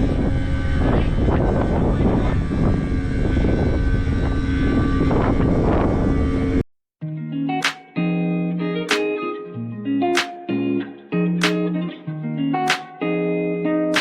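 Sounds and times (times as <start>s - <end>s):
heavy machinery drone: 0.0s - 6.6s.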